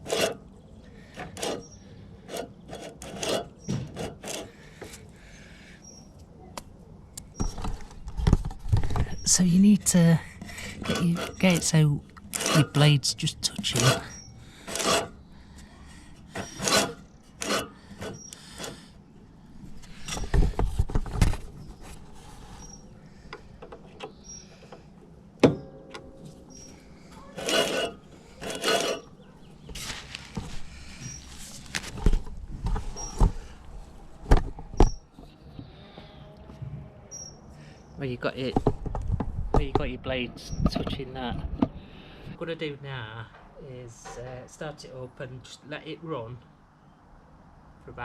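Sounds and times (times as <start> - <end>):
mower blades scraping: 0.0 - 5.0, 7.4 - 19.0, 19.6 - 35.0.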